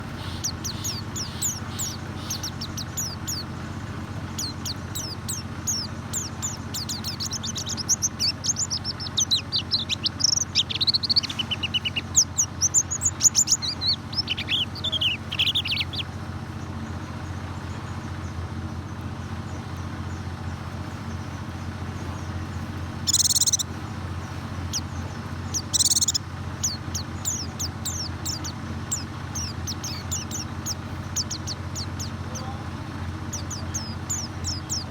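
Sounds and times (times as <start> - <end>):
short buzzy bird calls: 0.0 - 3.6, 4.3 - 16.2, 23.0 - 34.9
bird twittering chirps: 0.0 - 18.4, 19.5 - 34.9
steady low hum: 0.0 - 34.9.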